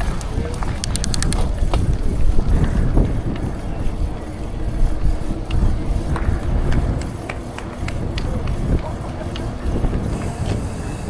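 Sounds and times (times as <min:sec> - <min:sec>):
faint clicks and rattles: 0:00.0 - 0:03.6
wind rumbling on microphone: 0:00.0 - 0:11.0.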